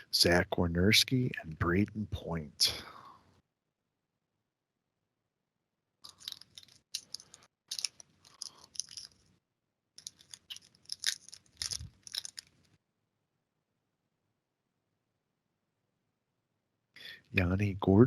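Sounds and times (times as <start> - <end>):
card packs crinkling and rustling: 10.0 - 12.5.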